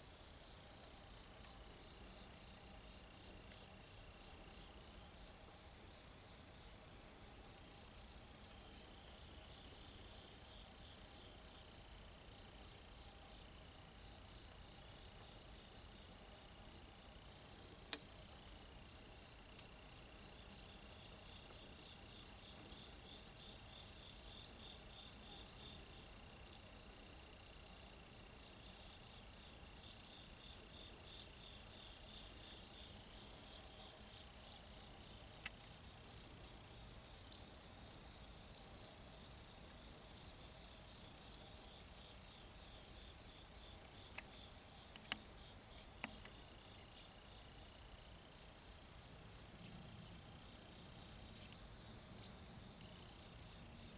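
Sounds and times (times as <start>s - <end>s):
insects trilling and chirping: 0.0s - 53.9s
soft clicks: 44.1s - 45.2s.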